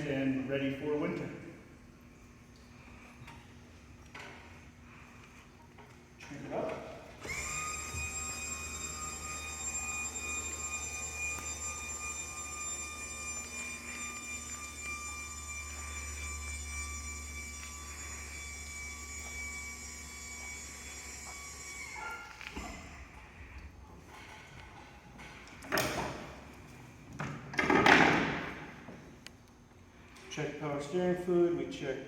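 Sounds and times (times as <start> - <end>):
electric pump motor whining: 4.1 - 26.7.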